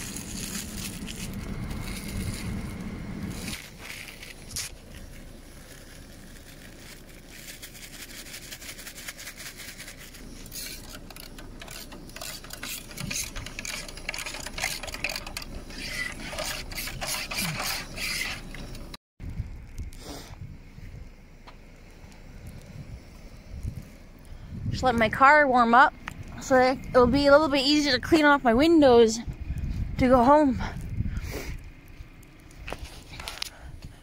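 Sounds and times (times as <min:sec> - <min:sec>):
gear clicking and rattling: 0:00.0 - 0:19.0.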